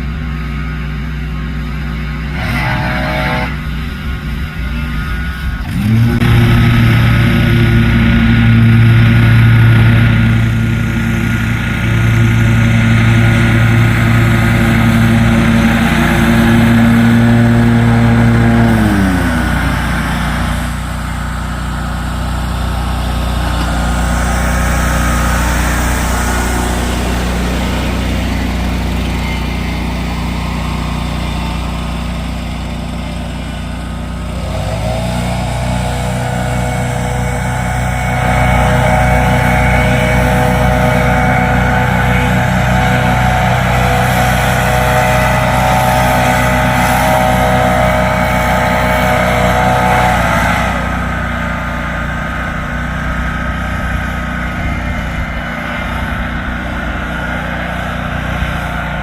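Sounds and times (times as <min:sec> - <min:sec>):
mower engine running: 0:00.0 - 0:59.0.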